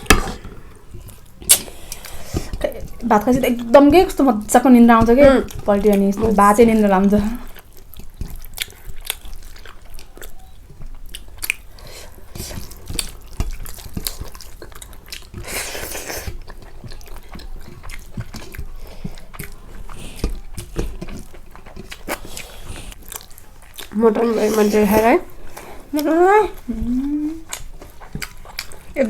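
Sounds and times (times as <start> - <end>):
person chewing: 0.0 - 29.0.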